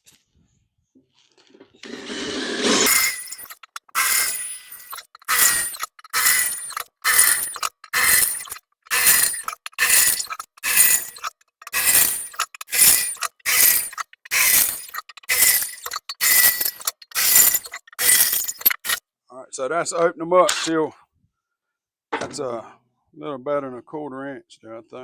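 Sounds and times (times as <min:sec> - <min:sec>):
drill bit grinding into steel: 0:02.4 - 0:19.0.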